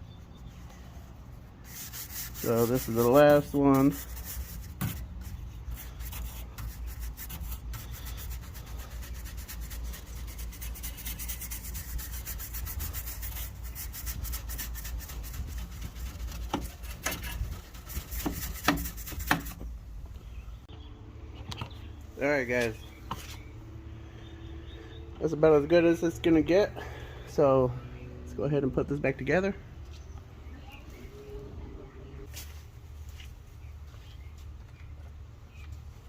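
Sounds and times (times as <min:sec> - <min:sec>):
brush scrubbing metal fins: 0:01.6 - 0:19.6.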